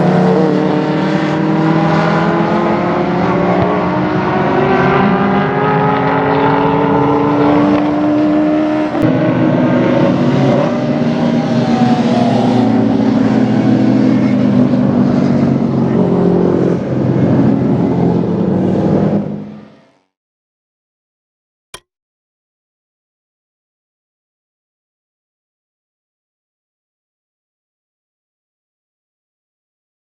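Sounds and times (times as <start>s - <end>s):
race car engine at full throttle: 0.0s - 20.2s.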